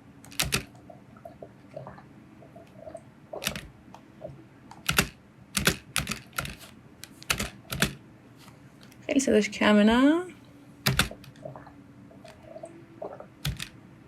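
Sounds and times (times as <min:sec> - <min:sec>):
keyboard keys clicking: 0:00.2 - 0:00.7, 0:04.7 - 0:08.0, 0:10.9 - 0:11.4, 0:13.4 - 0:13.7.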